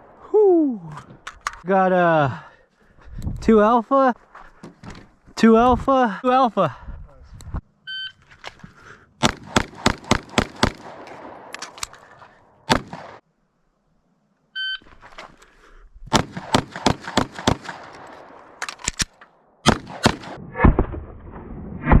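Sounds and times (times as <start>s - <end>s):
pistol shots: 9.2s - 11.7s, 12.7s - 13.2s, 16.1s - 18.6s, 19.6s - 20.8s.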